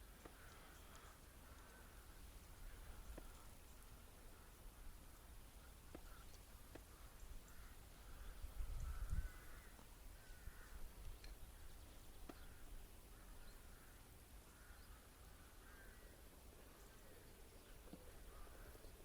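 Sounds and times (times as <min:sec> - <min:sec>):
wind rumble on microphone: 0:07.6 - 0:11.8.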